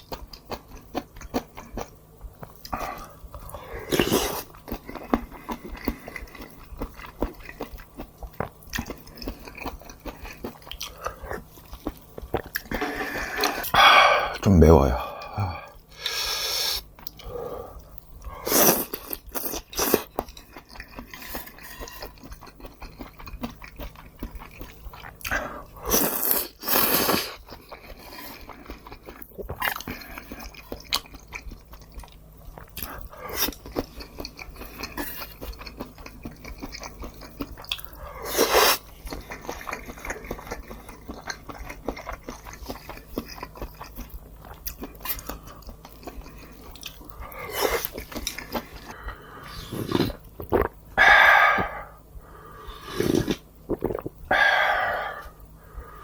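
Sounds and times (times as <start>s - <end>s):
chewing and crunching fried food: 0.0s - 13.9s, 14.6s - 56.0s.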